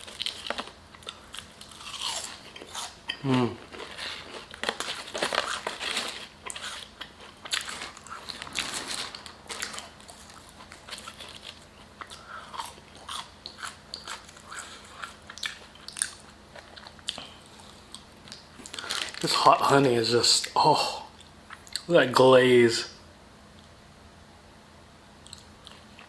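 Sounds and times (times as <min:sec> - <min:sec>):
person chewing and crunching food: 0:00.0 - 0:19.4, 0:25.2 - 0:26.0.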